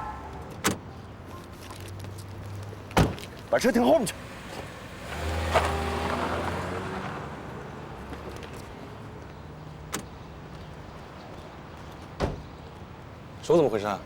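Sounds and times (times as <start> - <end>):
car engine moving off: 1.8 - 9.2.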